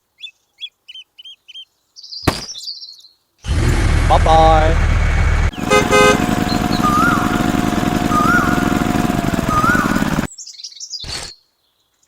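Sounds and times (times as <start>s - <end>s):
small engine pulsing: 3.5s - 10.3s
rising and falling chirps: 6.3s - 10.3s.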